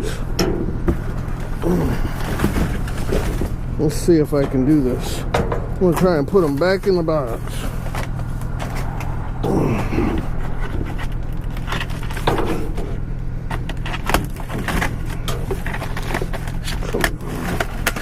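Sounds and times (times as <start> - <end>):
steady low hum: 0.0 - 18.0
plastic packages rubbing on cardboard: 13.8 - 18.0.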